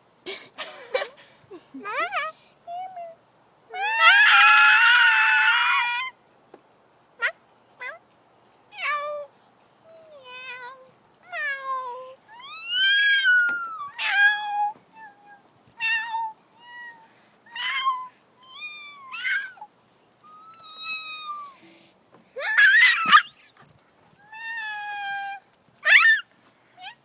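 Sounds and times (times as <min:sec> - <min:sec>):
girl squealing: 0:22.4 - 0:23.4.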